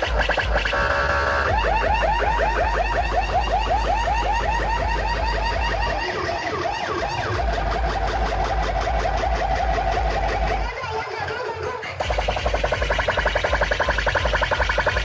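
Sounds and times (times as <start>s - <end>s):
siren-like rising chirps effect: 0.0s - 10.6s
heavy bass from sound system: 0.0s - 10.7s, 12.0s - 15.0s.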